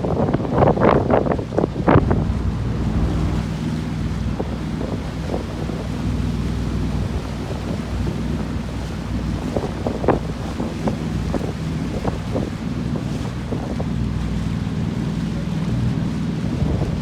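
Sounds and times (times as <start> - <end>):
wind buffeting microphone: 0.0 - 7.2
water splashing against hull: 1.5 - 14.7
motorboat engine running: 1.7 - 16.8.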